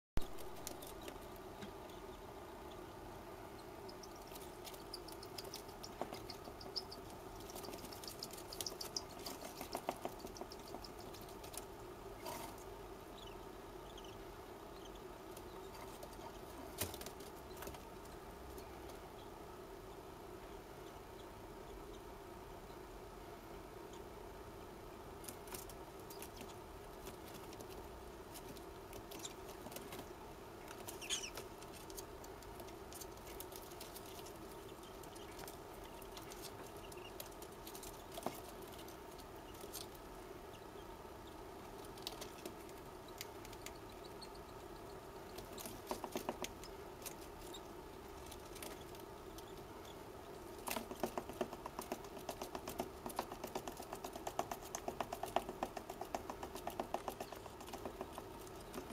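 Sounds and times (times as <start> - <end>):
bird chick scratching and tapping: 0.2 - 2.0, 3.6 - 13.3, 14.8 - 19.0, 25.2 - 40.6, 41.6 - 58.9
steady low hum: 0.2 - 58.9.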